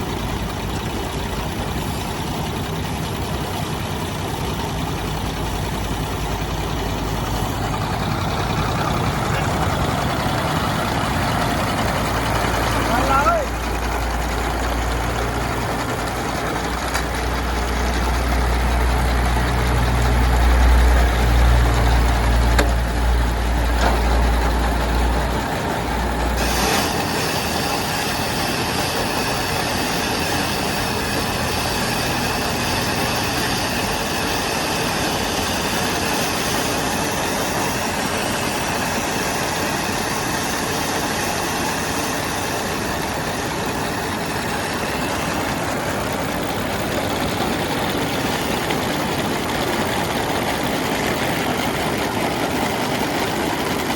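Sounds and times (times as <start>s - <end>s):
feed processing machine running: 0.0s - 53.9s
heavy low hum: 4.8s - 26.5s.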